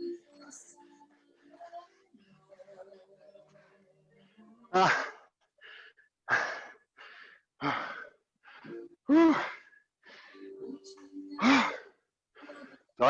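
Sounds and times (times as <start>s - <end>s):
hard ragged breathing: 4.8s - 10.6s.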